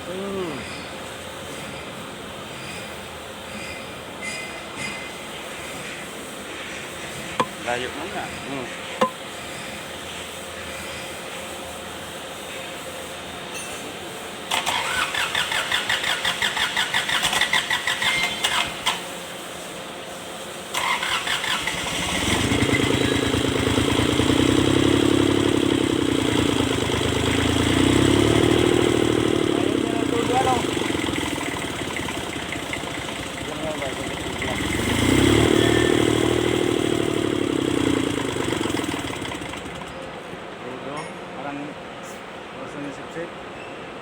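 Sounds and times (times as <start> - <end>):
diesel engine cranking: 6.5 - 9.9, 14.5 - 19.2, 20.7 - 40.4
diesel engine revving: 20.7 - 40.2.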